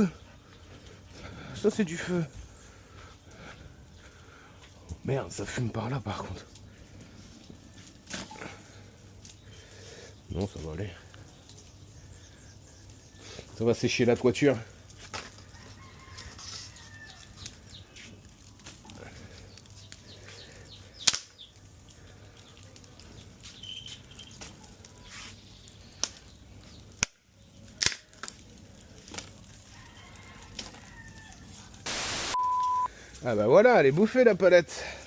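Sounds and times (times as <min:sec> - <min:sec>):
wood fire burning: 0:00.0 - 0:33.3
fire crackling pops: 0:06.4 - 0:15.6, 0:17.1 - 0:29.8, 0:31.9 - 0:32.9.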